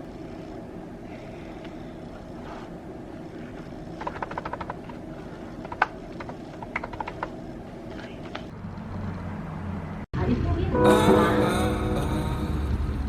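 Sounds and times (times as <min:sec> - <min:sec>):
steady low rumble: 0:10.8 - 0:13.0.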